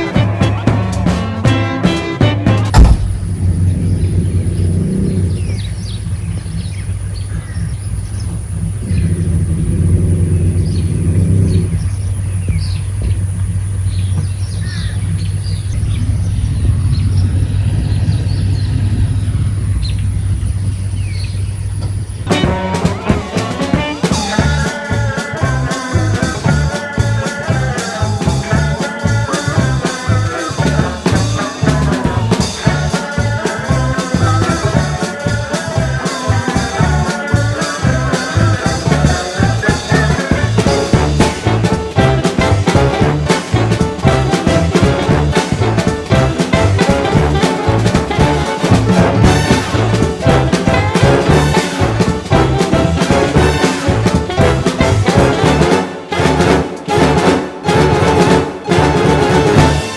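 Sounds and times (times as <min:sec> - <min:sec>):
swing music with brass and drums: 0:00.0 - 0:06.6, 0:08.9 - 0:11.8, 0:22.2 - 0:59.9
low rumble: 0:02.7 - 0:29.8.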